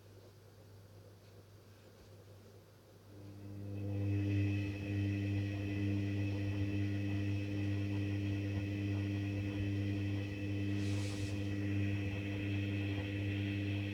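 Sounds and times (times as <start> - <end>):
washing machine motor hum: 3.1 - 13.9
brief hiss: 10.8 - 11.5.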